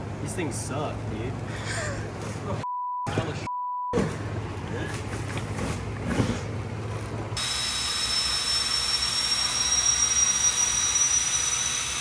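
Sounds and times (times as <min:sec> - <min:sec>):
air tool hiss and whine: 0:07.4 - 0:12.0.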